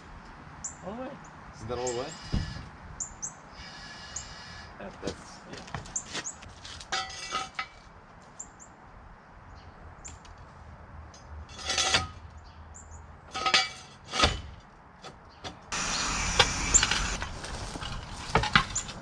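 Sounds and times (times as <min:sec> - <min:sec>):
metal clanking: 0:06.9 - 0:07.8, 0:13.3 - 0:14.6.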